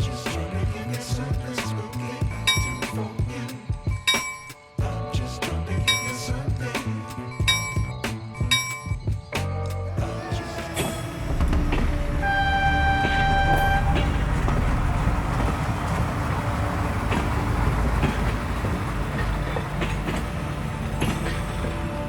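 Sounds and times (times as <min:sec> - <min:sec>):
moving train rumble: 0:09.9 - 0:22.0
train horn: 0:10.0 - 0:18.3.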